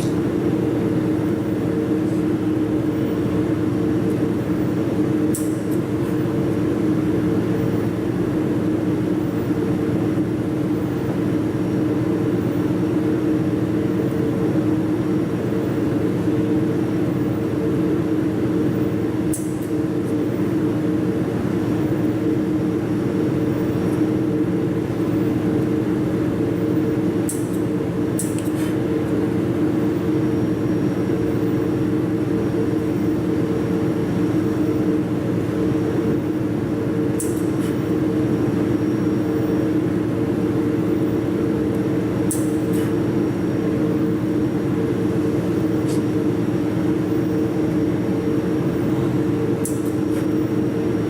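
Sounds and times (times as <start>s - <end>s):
steady mechanical hum: 0.0s - 51.0s
sharp click: 19.3s - 19.7s, 28.2s - 28.8s, 37.2s - 37.8s, 42.3s - 42.9s, 49.6s - 50.3s.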